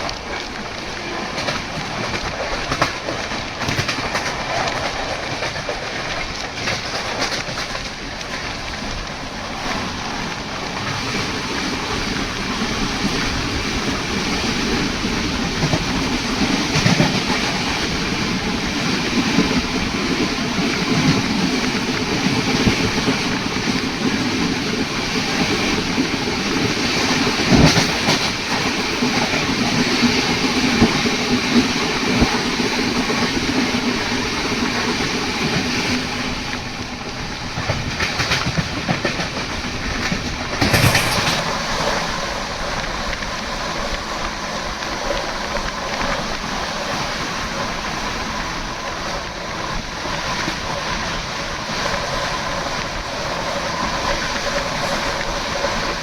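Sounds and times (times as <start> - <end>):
train wheels clattering over rails: 0.0 - 56.0
sharp knocks: 40.6 - 41.4.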